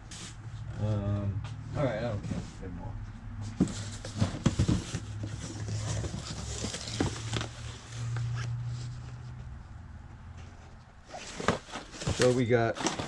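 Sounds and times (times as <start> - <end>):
plastic packaging rustling and clicking: 3.7 - 8.3, 11.1 - 13.0.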